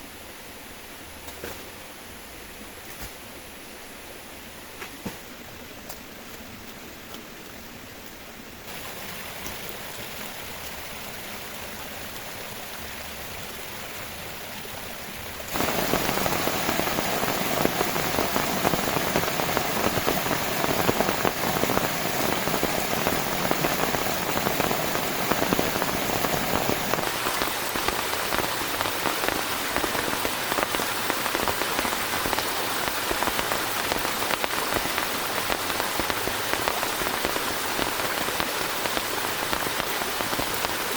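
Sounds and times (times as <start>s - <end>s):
heavy rain pouring: 8.7s - 13.9s, 15.1s - 40.9s.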